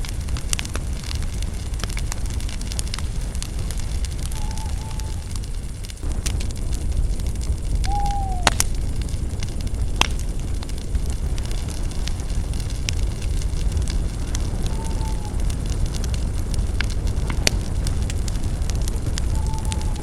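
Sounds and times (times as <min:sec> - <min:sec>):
bonfire crackling and popping: 0:00.0 - 0:20.0
fire roaring: 0:00.0 - 0:20.0
brief whistling tones: 0:07.9 - 0:08.6.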